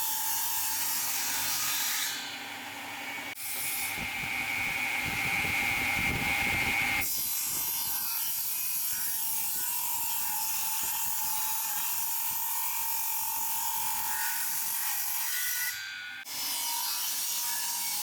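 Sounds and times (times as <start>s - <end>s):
woodworking power tool whining: 0.0s - 7.6s.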